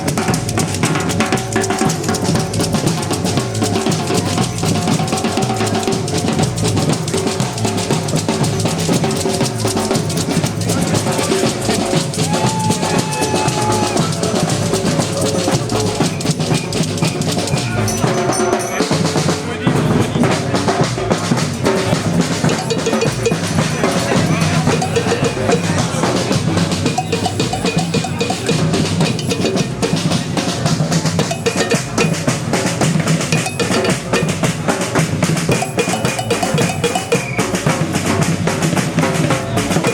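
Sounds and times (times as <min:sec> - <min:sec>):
deep bass drums: 0:00.0 - 0:18.1
drum band playing: 0:00.0 - 0:39.9
snare drums: 0:00.0 - 0:39.9.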